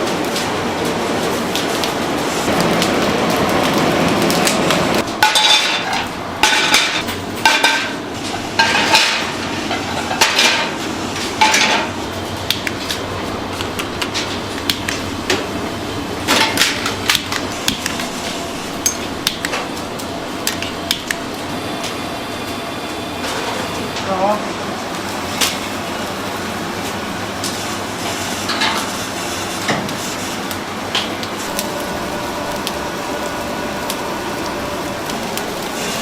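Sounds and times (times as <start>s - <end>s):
metal kitchenware clanking: 5.2s - 12.0s.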